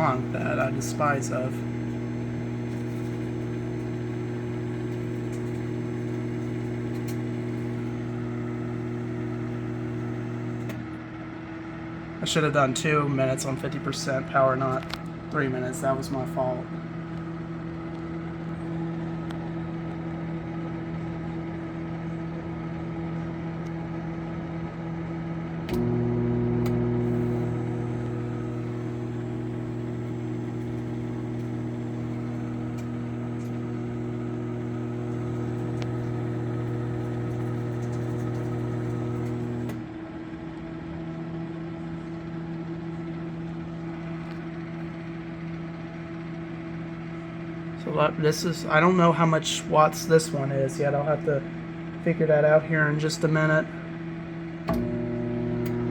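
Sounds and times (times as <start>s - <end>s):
deep transformer hum: 0.0s - 10.8s, 12.2s - 40.6s
microwave click: 0.0s - 10.9s, 25.6s - 39.8s, 54.6s - 55.9s
microwave fan and turntable hum: 0.0s - 55.9s.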